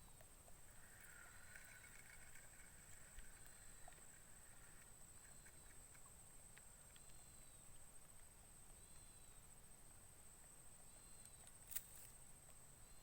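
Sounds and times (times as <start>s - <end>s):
soft chirps: 0.0s - 9.6s.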